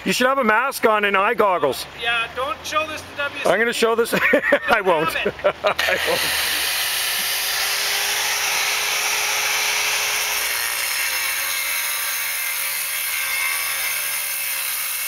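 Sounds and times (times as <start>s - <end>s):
power cutter grinding stone: 5.8s - 15.0s.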